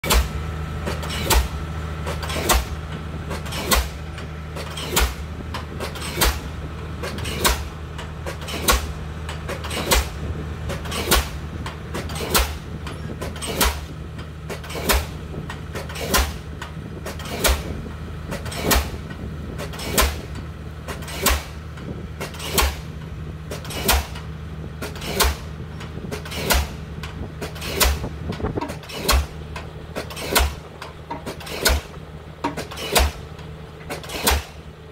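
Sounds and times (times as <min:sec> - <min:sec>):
pile hammer bangs: 0:33.9 - 0:34.6.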